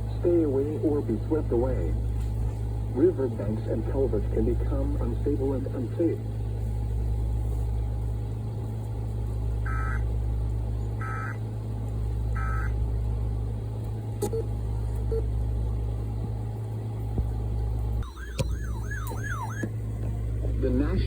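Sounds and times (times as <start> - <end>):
steady low hum: 0.0 - 21.0
data tone bursts: 12.4 - 12.7.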